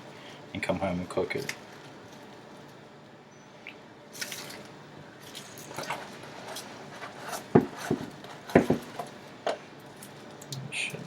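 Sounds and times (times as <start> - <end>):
loud dull knocks: 7.5 - 8.9.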